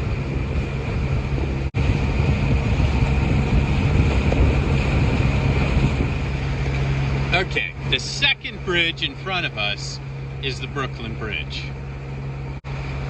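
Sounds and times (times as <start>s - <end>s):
wind buffeting microphone: 0.0s - 10.4s
boat engine humming: 0.0s - 13.0s
water rushing past hull: 0.0s - 13.0s.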